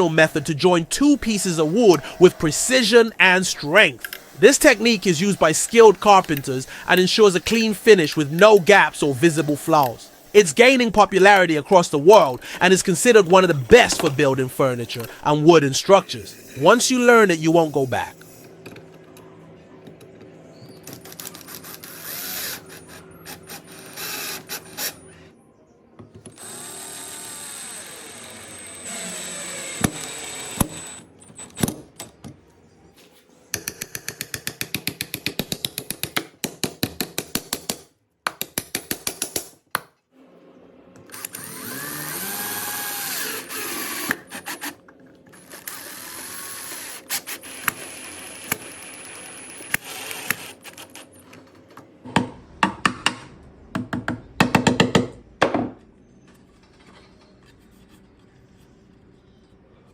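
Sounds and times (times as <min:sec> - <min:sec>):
power drill running: 0:21.5 - 0:25.0, 0:26.3 - 0:31.0, 0:41.0 - 0:44.7, 0:45.4 - 0:51.0.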